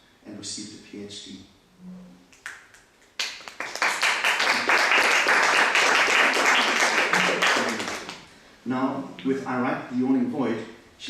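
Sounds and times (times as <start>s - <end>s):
audience applauding: 3.2s - 8.3s.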